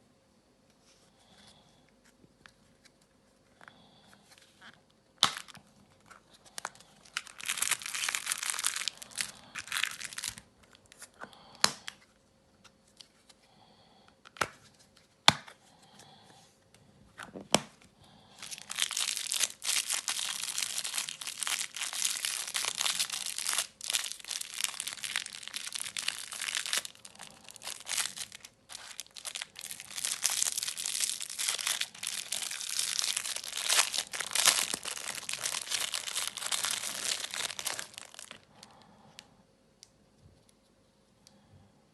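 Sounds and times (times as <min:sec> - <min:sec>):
packaging crinkling and tearing: 0:05.2 - 0:12.0, 0:18.3 - 0:38.8.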